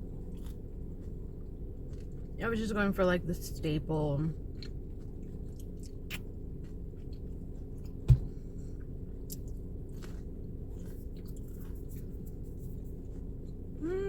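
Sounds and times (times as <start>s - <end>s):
chewing and biting food: 0.0s - 2.4s, 3.5s - 13.8s
steady low hum: 0.0s - 14.0s
sharp thump: 8.1s - 8.3s.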